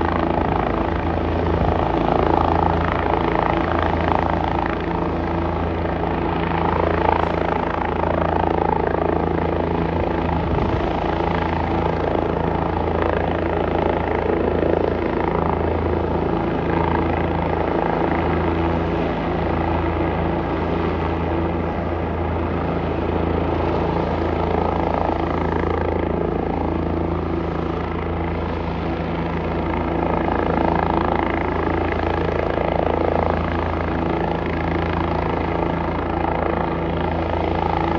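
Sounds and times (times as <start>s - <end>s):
helicopter rotor and engine drone: 0.0s - 37.9s
steady low hum: 0.0s - 37.9s.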